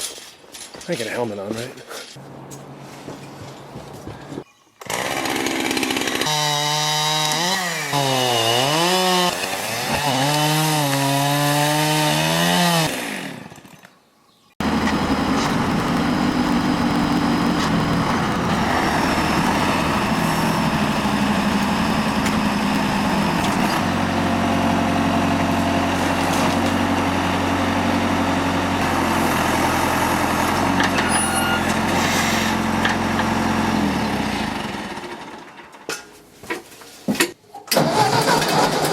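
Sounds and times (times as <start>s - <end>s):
chainsaw revving: 4.8s - 13.7s, 14.6s - 30.9s, 31.8s - 35.5s
tractor engine running: 14.6s - 35.8s.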